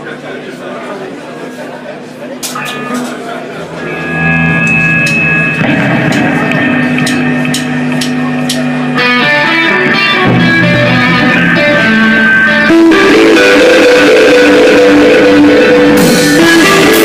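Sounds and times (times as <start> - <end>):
live rock band electric guitars: 2.4 - 17.0
sustained low bass note: 3.7 - 9.0.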